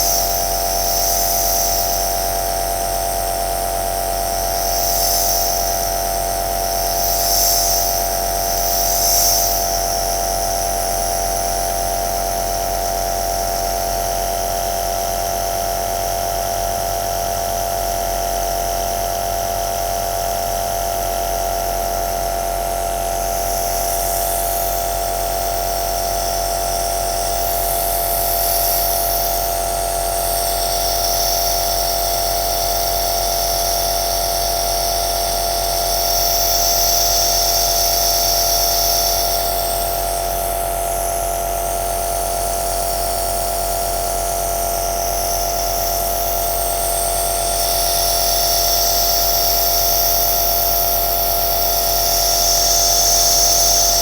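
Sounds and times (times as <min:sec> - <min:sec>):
nebulizer motor humming: 0:47.4 - 0:54.0.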